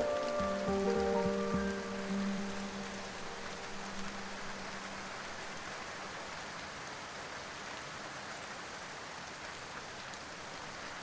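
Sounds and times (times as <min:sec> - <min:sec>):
steady hiss: 0:00.0 - 0:06.5.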